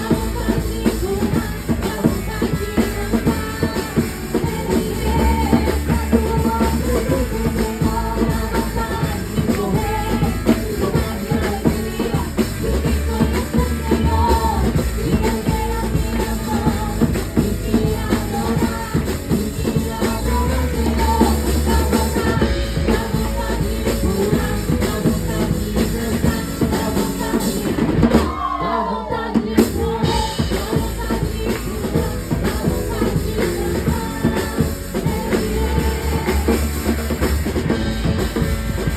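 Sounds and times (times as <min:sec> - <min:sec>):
bass drum: 0:00.0 - 0:28.5, 0:29.5 - 0:38.9
person singing: 0:00.0 - 0:37.7
band music with drum kit: 0:00.0 - 0:38.9.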